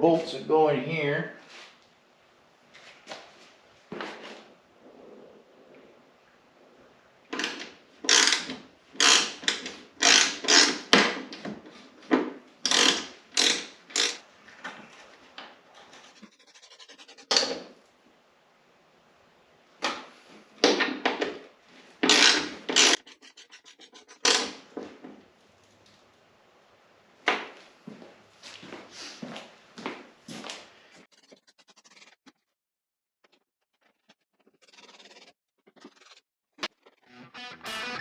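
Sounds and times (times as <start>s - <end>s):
ratchet spinning freely: 8.1s - 8.4s
ratchet wrench clicking: 8.1s - 10.8s, 12.7s - 14.2s.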